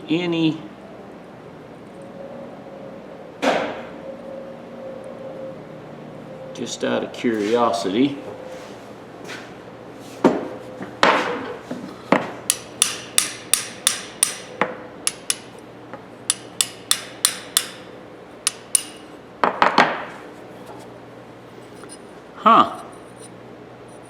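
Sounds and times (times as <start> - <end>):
hammer tapping on steel: 12.5 - 15.6, 16.3 - 17.9, 18.5 - 19.1.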